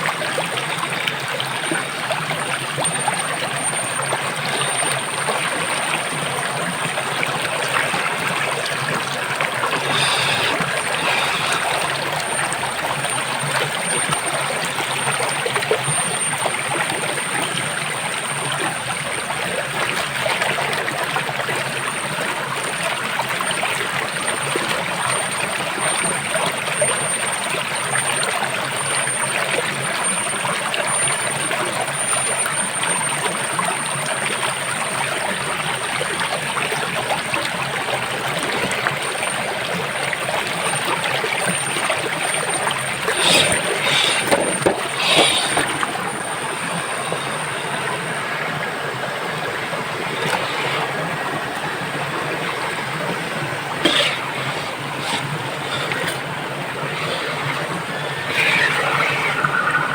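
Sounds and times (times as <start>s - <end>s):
water running: 2.0s - 20.2s, 40.2s - 59.9s.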